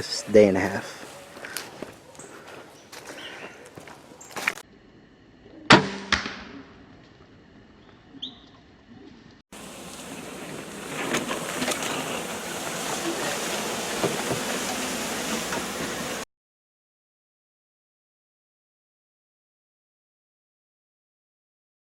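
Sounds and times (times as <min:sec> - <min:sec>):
gunshot with ringing tail: 0:05.7 - 0:06.9
steady hiss: 0:09.6 - 0:16.2.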